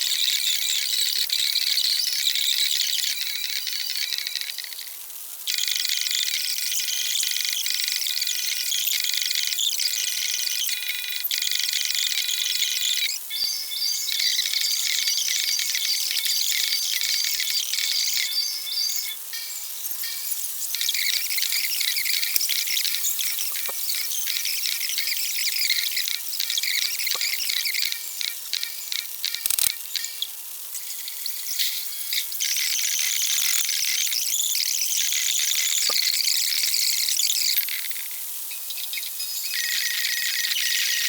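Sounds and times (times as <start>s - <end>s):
insects chirring: 13.9s - 41.0s.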